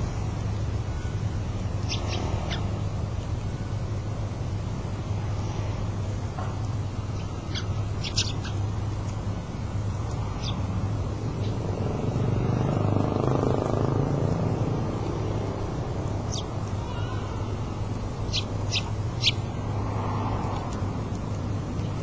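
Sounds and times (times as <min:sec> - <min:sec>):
small birds chirping: 0:00.9 - 0:03.4, 0:06.6 - 0:11.8, 0:16.1 - 0:19.6.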